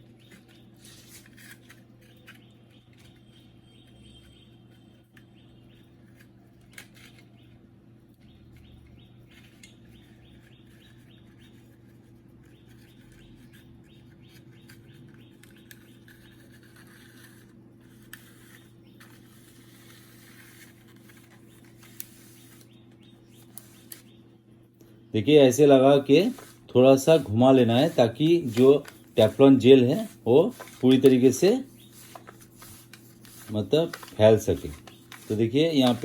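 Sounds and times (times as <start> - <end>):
low electrical hum: 0.0 - 36.0
light rapid scratching: 25.3 - 36.0.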